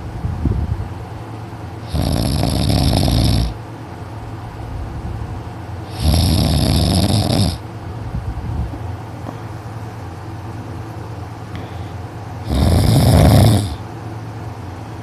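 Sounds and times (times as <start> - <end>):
steady low hum: 0.0 - 15.0
person snoring loudly: 1.8 - 3.6, 5.9 - 7.6, 12.4 - 13.8.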